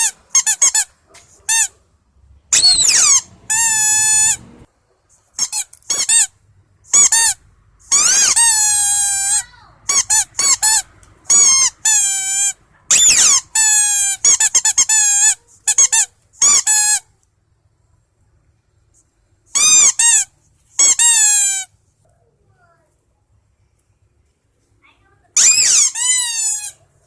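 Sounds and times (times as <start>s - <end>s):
high-pitched squeaking: 0.0s - 1.8s, 2.5s - 4.7s, 5.4s - 17.1s, 19.5s - 21.7s, 25.4s - 26.9s.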